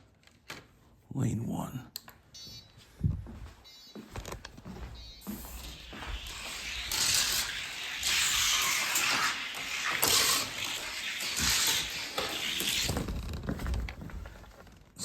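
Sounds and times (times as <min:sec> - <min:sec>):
toy car wheels hissing on track: 0:05.4 - 0:13.2.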